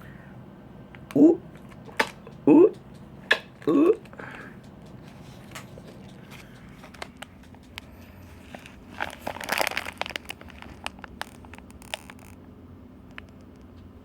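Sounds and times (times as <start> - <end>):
toy crinkling: 4.9 - 12.4.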